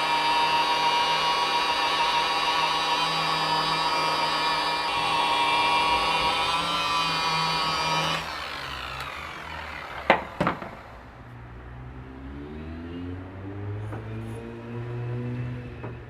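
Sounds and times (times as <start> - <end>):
electric polisher whining: 0.0 - 11.2
sharp knocks: 10.0 - 10.8.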